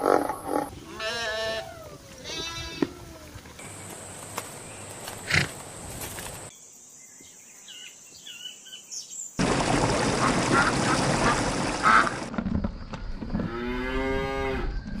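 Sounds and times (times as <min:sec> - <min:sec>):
long falling animal call: 0:00.9 - 0:03.4.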